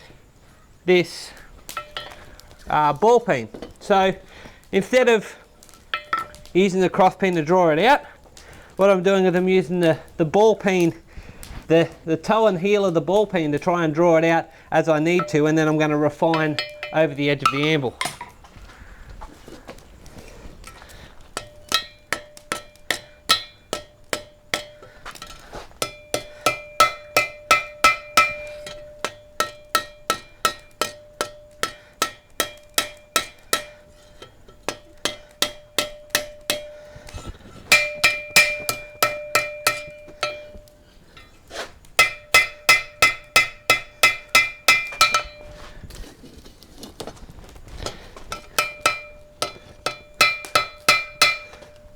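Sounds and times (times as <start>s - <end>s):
hammer striking steel on anvil: 1.7s - 2.3s, 5.9s - 6.5s, 15.0s - 18.4s, 21.4s - 41.4s, 42.0s - 45.8s, 48.3s - 51.9s
ringing anvil tone: 1.8s - 2.2s, 5.9s - 6.4s, 15.0s - 18.3s, 21.4s - 41.3s, 42.0s - 45.7s, 48.3s - 51.9s.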